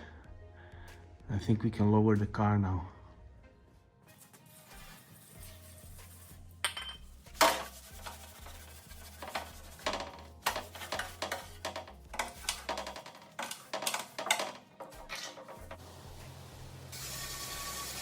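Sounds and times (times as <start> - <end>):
quiet background music: 0.0 - 18.0
metal tools clinking and clanking: 6.6 - 7.6, 10.4 - 15.8.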